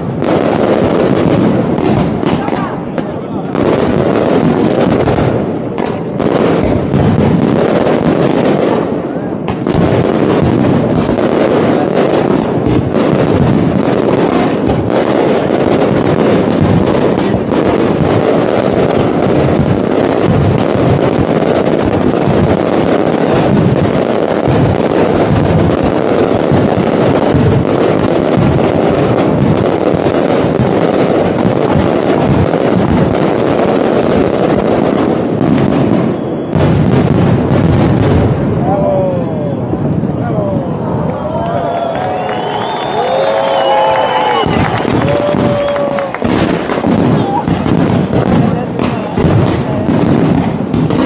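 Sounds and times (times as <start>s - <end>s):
fireworks booming and crackling: 0.0s - 51.0s.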